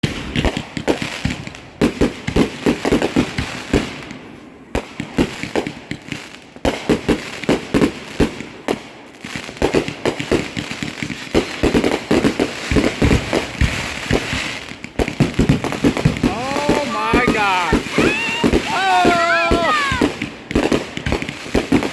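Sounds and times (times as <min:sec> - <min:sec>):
fireworks bangs: 0:04.8 - 0:21.9.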